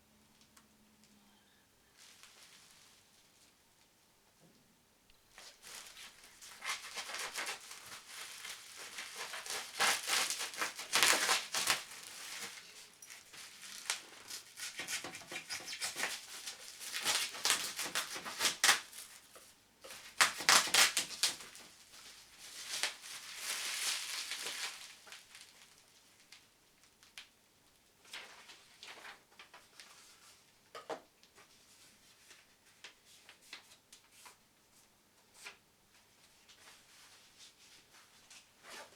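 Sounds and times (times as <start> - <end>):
packaging crinkling and rustling: 2.0 - 3.6, 5.3 - 27.4.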